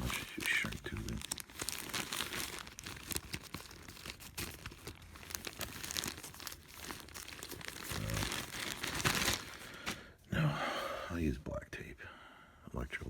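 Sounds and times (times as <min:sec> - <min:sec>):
hands rummaging small parts: 0:00.0 - 0:10.0
crinkling and rustling: 0:00.0 - 0:10.2.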